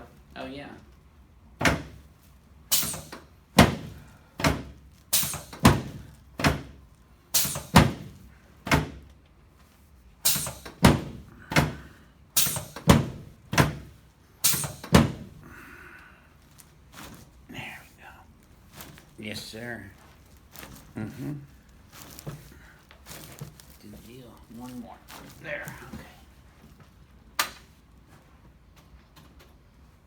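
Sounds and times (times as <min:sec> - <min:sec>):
thuds on treatment table: 0:03.6 - 0:04.8.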